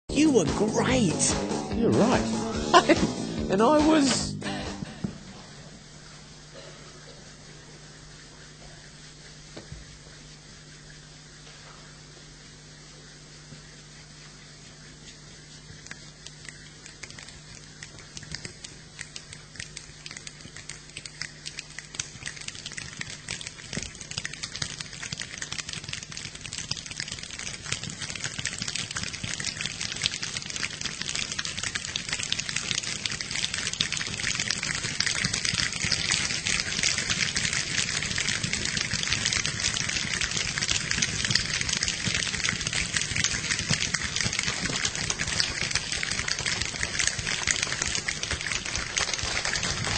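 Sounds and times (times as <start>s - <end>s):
rain sound effect pattering: 0.2s - 4.2s, 15.8s - 49.9s.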